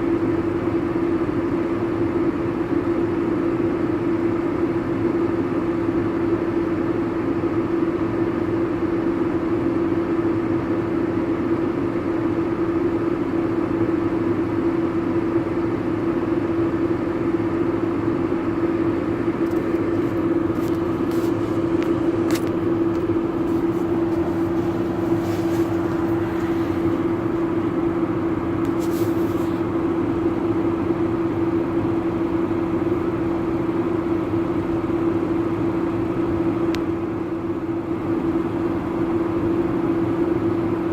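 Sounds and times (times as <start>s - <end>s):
combine harvester humming: 12.8s - 40.8s.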